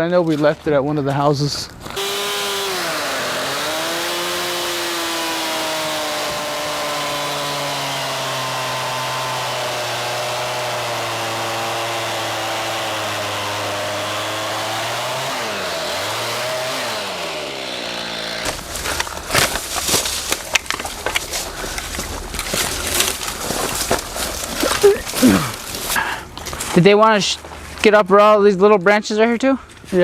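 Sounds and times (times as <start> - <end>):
chainsaw engine running: 2.0 - 19.4.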